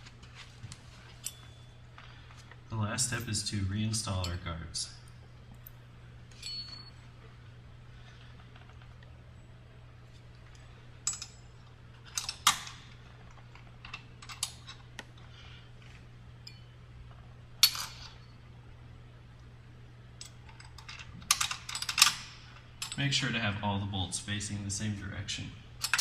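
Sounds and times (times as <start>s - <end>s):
metallic clinks of tools and bolts: 1.1s - 1.8s, 5.6s - 7.0s, 11.0s - 12.8s, 16.4s - 16.7s, 17.6s - 18.3s, 25.8s - 26.0s.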